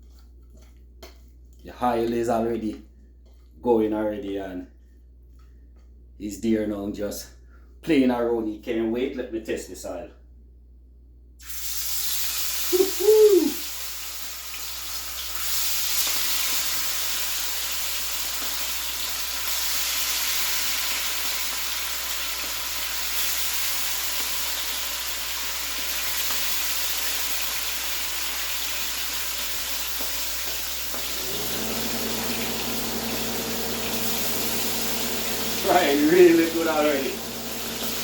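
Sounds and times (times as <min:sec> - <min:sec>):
meat sizzling in frying oil: 0:11.4 - 0:38.0.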